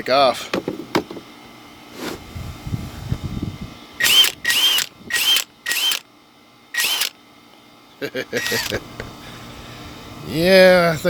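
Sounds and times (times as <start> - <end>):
impact wrench whirring: 4.0 - 6.0, 6.8 - 7.2, 8.4 - 8.8.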